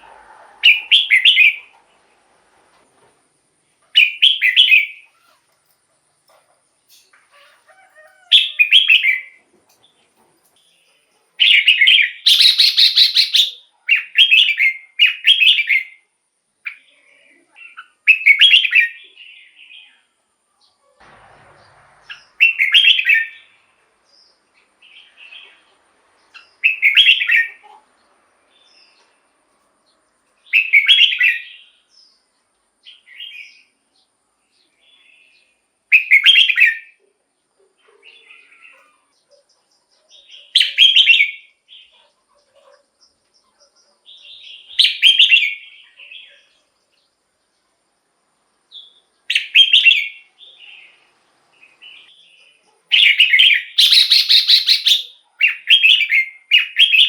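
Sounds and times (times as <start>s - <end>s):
bird singing whistled phrases: 0.6s - 1.7s, 11.4s - 15.9s, 40.4s - 41.4s, 44.7s - 46.0s, 48.8s - 50.3s, 52.9s - 57.0s.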